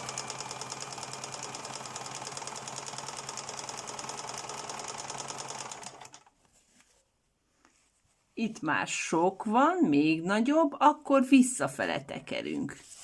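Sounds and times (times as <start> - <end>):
sewing machine stitching: 0.0 - 6.3.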